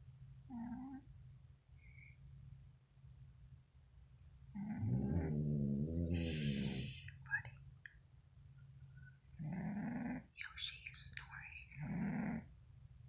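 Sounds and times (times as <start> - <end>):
cat snoring: 0.5 - 1.0, 4.6 - 7.1, 9.4 - 10.3, 11.8 - 12.5.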